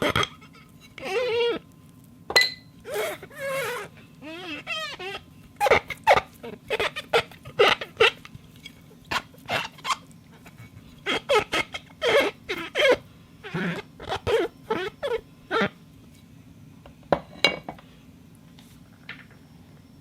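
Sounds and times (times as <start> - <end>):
squeaking glass: 0.0 - 1.6, 2.4 - 10.0.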